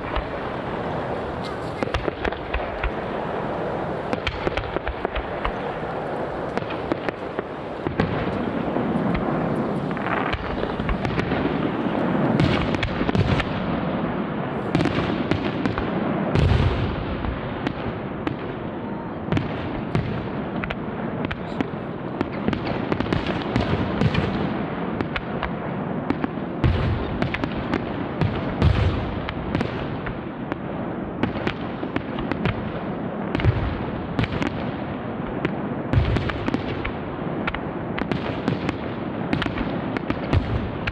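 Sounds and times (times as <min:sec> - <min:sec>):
fireworks crackling: 0:00.0 - 0:16.8.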